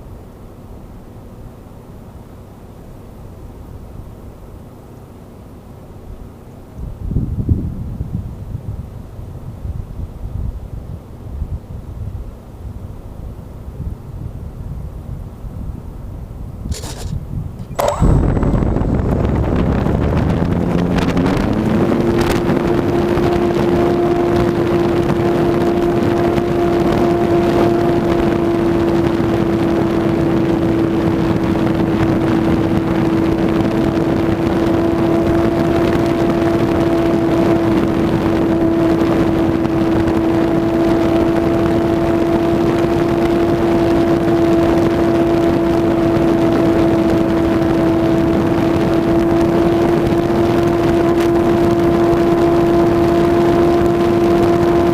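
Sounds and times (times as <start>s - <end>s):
wind rushing past camera: 13.8s - 54.9s
electric plane motor whining: 16.8s - 24.7s.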